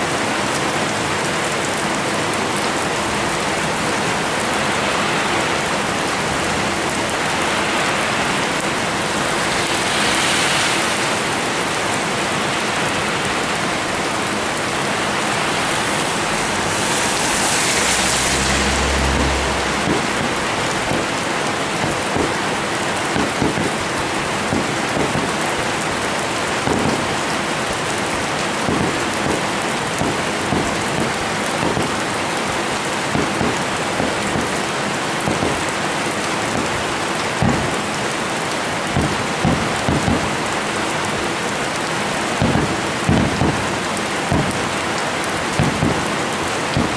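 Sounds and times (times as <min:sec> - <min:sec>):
fireworks crackling hiss: 0:03.4 - 0:41.6, 0:42.2 - 0:46.9
low firework boom: 0:19.1 - 0:21.2
sharp firework pops: 0:19.2 - 0:25.6, 0:26.6 - 0:27.3, 0:28.7 - 0:32.1, 0:33.1 - 0:35.7, 0:36.5 - 0:36.8, 0:37.4 - 0:37.8, 0:39.0 - 0:40.4, 0:42.4 - 0:43.6, 0:44.3 - 0:44.7, 0:45.6 - 0:46.9.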